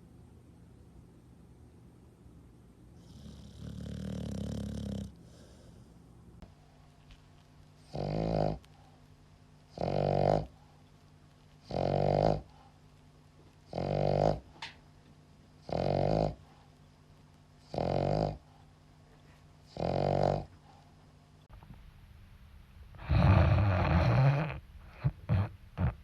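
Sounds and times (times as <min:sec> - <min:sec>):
dog snoring: 0:03.0 - 0:05.9, 0:07.8 - 0:08.7, 0:09.7 - 0:10.7, 0:11.6 - 0:12.7, 0:13.6 - 0:14.6, 0:15.6 - 0:16.7, 0:17.6 - 0:18.6, 0:19.7 - 0:20.8, 0:23.0 - 0:26.0.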